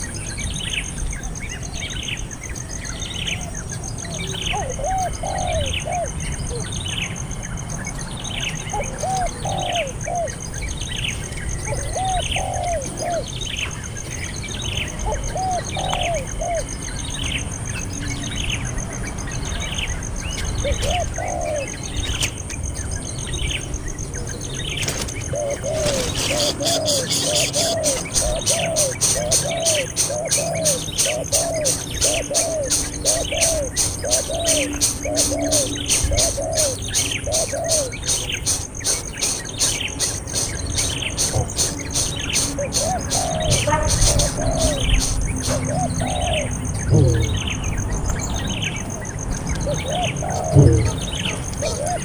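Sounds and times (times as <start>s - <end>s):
high falling bird chirps: 0.0s - 52.0s
lower warbling bird calls: 0.0s - 52.0s
rapid clicking rattle: 26.1s - 36.0s, 38.1s - 43.3s.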